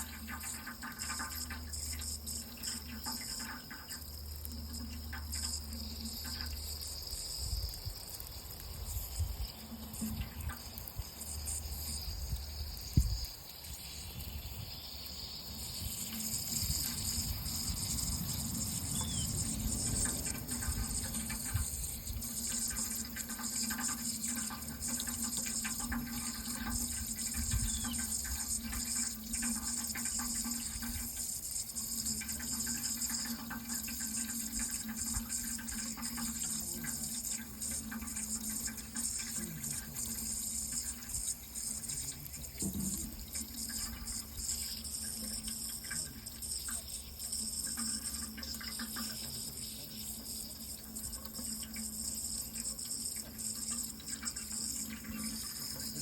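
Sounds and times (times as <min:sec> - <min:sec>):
running water: 0:00.0 - 0:56.0
thump: 0:42.6 - 0:43.0.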